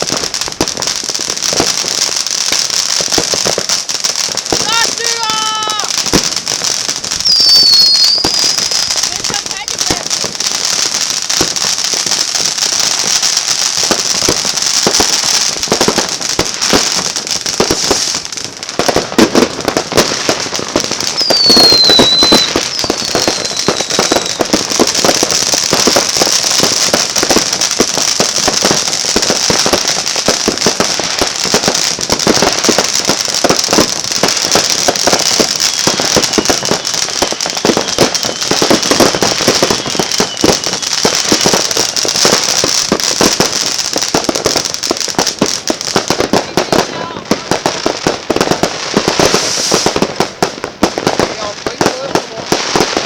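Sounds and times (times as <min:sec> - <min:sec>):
fireworks bangs and crackling: 0:00.0 - 0:53.0
falling firework whistle: 0:04.5 - 0:09.2, 0:20.4 - 0:43.5, 0:49.0 - 0:50.1.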